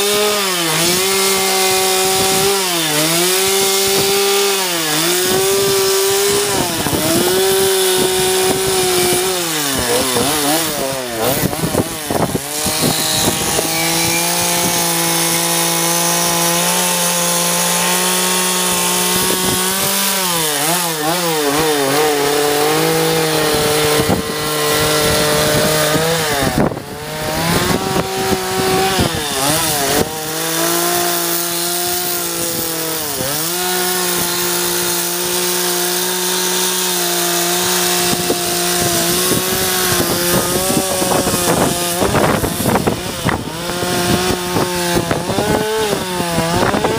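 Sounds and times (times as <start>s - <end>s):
chainsaw cutting log: 0.0s - 46.9s.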